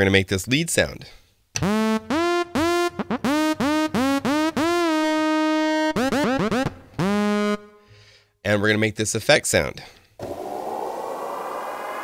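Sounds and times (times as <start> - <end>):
synth lead staccato notes: 1.6 - 7.7.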